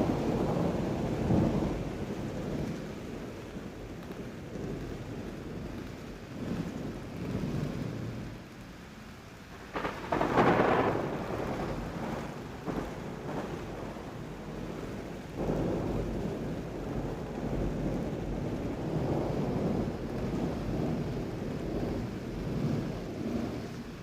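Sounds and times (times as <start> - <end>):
thunder rolling rumble: 0.0 - 5.8, 9.5 - 24.0
thunder cracks: 9.7 - 23.4.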